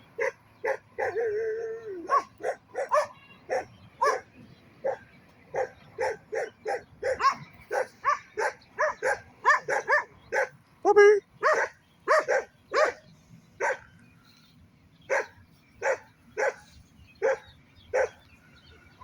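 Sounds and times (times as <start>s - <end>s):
dog barking in high yaps: 2.1s - 4.2s, 5.6s - 13.0s.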